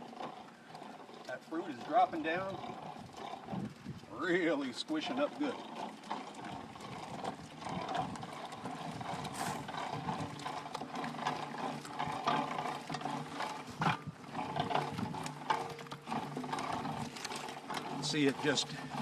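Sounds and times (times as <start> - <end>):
fruit grinding and squishing: 4.6 - 19.0.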